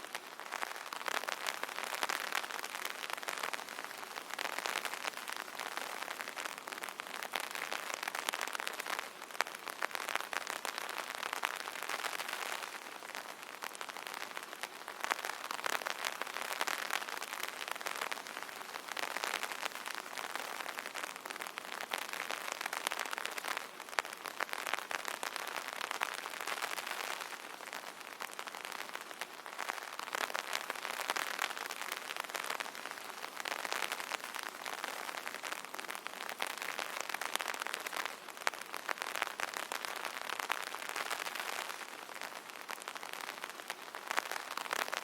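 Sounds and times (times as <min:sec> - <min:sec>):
rain pattering on an umbrella: 0:00.0 - 0:45.0.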